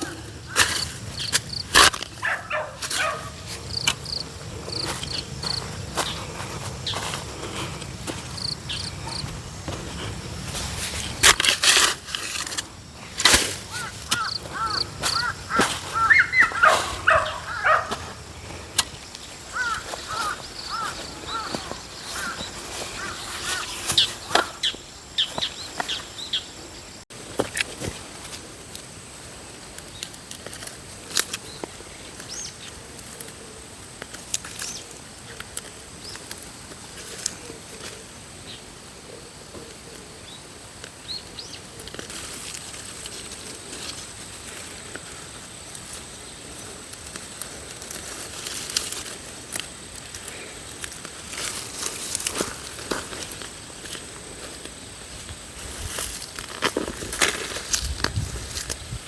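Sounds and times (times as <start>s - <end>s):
rustling: 0.0s - 26.1s, 41.6s - 59.0s
bird chirping: 13.7s - 18.4s.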